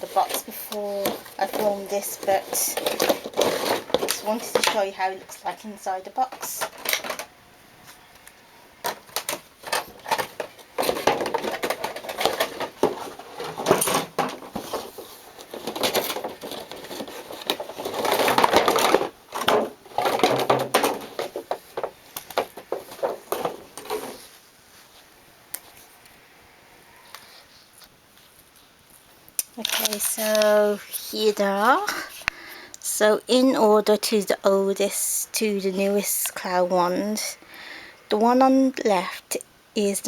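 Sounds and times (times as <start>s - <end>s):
toy packaging clicks and rustles: 0.0s - 7.4s, 8.2s - 24.4s, 27.1s - 32.8s.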